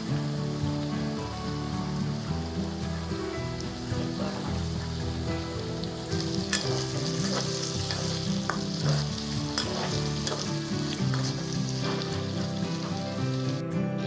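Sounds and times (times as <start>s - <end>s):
food sizzling in a pan: 0.0s - 13.9s
spatula scraping a pan: 6.1s - 13.2s.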